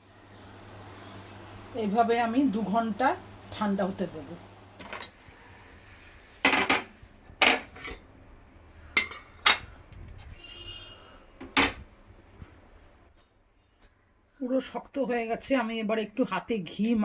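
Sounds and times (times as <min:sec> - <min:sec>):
metal utensils clinking: 0:06.5 - 0:08.0, 0:08.9 - 0:09.7.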